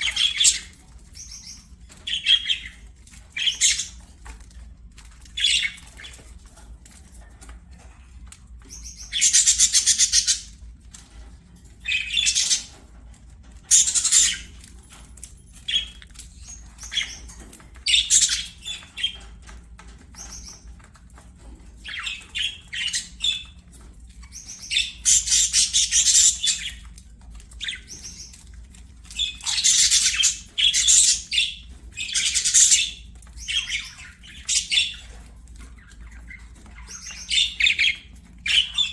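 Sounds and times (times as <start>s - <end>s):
budgerigars chattering and warbling: 0.0s - 4.0s, 5.3s - 6.3s, 8.6s - 10.6s, 11.8s - 12.8s, 13.6s - 14.6s, 15.7s - 19.3s, 21.8s - 23.6s, 24.3s - 38.9s.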